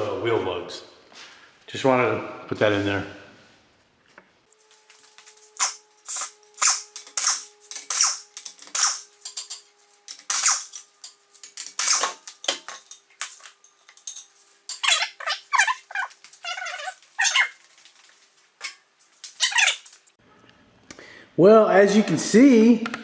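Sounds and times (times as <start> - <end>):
rustling and clattering: 6.9 - 20.2.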